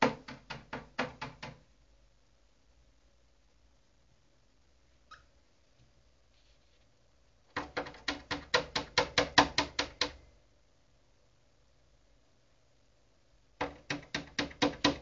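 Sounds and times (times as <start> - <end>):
parrot beak tapping on monitor: 7.5 - 10.2, 13.6 - 15.0.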